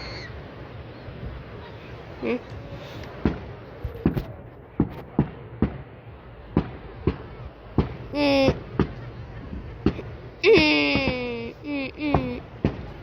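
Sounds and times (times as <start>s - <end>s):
fireworks bangs: 2.6s - 13.0s.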